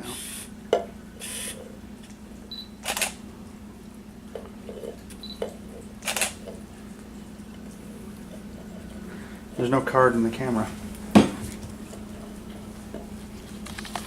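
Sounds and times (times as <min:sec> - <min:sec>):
steady low hum: 0:00.0 - 0:14.0
camera beeping: 0:02.5 - 0:03.2, 0:06.0 - 0:06.4
camera shutter clicking: 0:02.8 - 0:03.2, 0:06.0 - 0:06.4.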